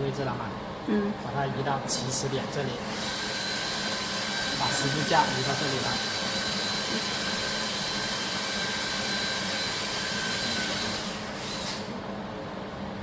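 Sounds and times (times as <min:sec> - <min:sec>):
machinery whirring: 0:02.0 - 0:12.0.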